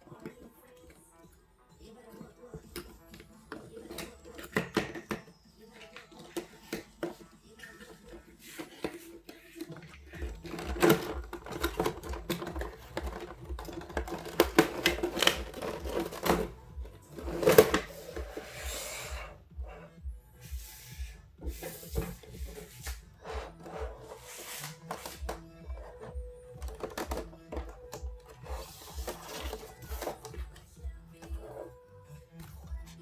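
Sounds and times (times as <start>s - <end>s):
background music with steady beat: 0.0s - 33.0s
packaging rustling and clicking: 5.8s - 18.8s, 21.5s - 31.6s.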